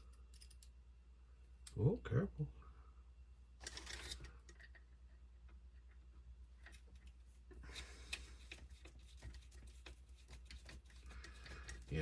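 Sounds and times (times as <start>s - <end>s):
small plastic parts clicking: 0.0s - 0.8s.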